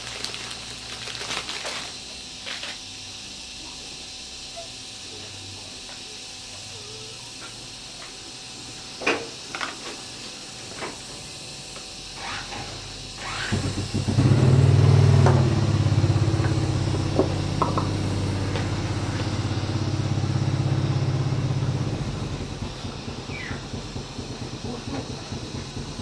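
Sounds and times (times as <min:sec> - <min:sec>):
diesel tractor engine running: 0:13.5 - 0:26.0.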